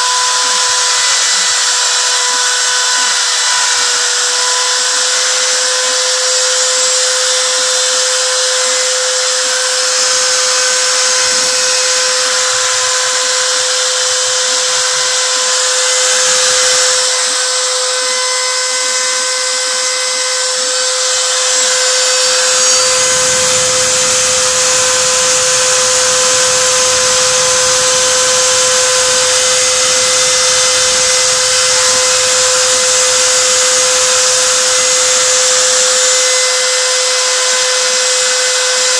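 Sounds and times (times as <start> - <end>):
router spindle high whine: 0.0 - 38.9
low rumble: 22.8 - 33.0.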